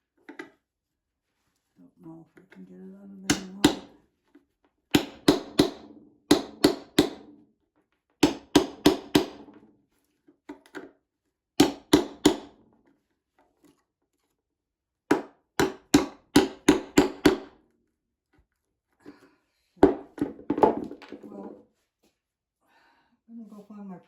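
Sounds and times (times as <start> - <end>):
hammer tapping nail: 3.3 - 3.9, 4.9 - 7.4, 8.2 - 9.6, 11.6 - 12.5, 15.1 - 17.5.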